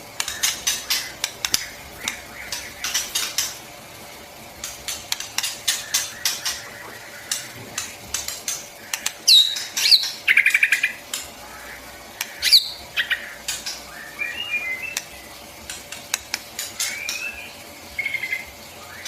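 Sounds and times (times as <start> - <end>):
bird singing clicks and whistles: 13.5 - 18.4.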